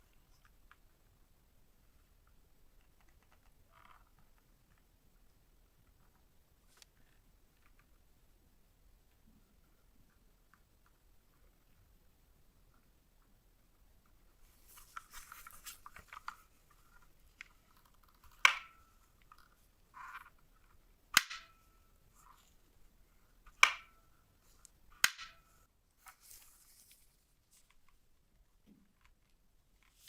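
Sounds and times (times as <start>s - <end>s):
hands rustling on hard items: 14.4s - 17.9s, 24.4s - 27.9s.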